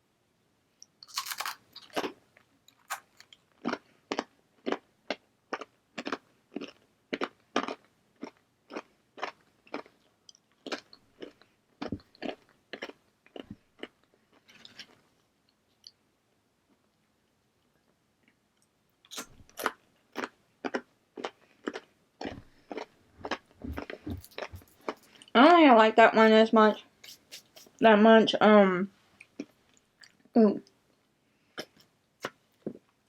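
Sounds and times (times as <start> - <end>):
tortilla chip crunching: 1.0 - 4.8.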